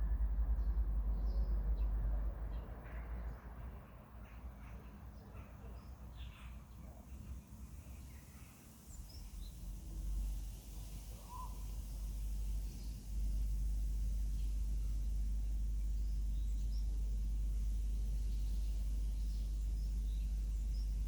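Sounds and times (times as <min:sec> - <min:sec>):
steady low rumble: 0:00.0 - 0:06.1, 0:09.2 - 0:21.0
faint bird calls: 0:04.2 - 0:07.2, 0:11.2 - 0:11.8.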